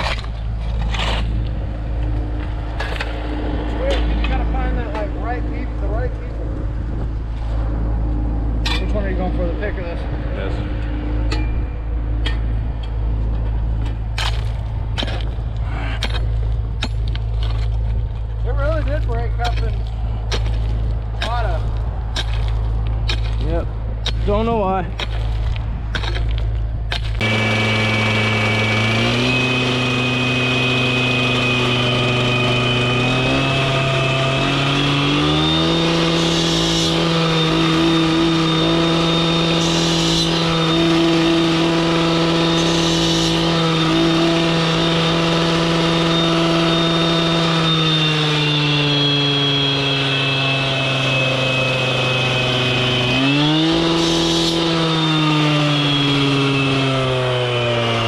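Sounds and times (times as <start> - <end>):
heavy machine engine revving: 27.2 - 58.0.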